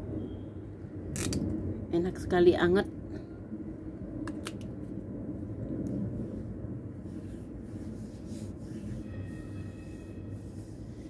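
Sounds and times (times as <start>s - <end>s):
hands rubbing oiled skin: 5.8s - 11.0s.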